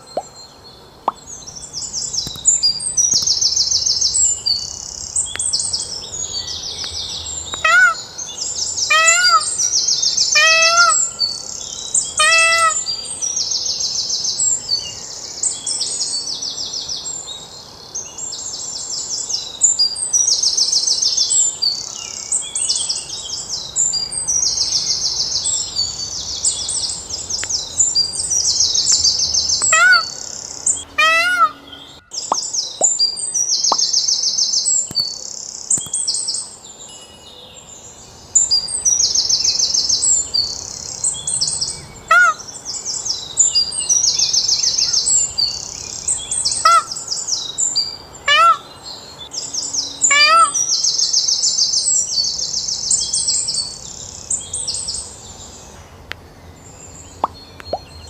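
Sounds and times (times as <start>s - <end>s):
small birds chirping: 0.0s - 58.0s
peacock calling loudly: 7.5s - 13.1s, 29.4s - 32.4s, 42.1s - 42.5s, 46.6s - 47.1s, 48.2s - 48.7s, 50.0s - 50.7s.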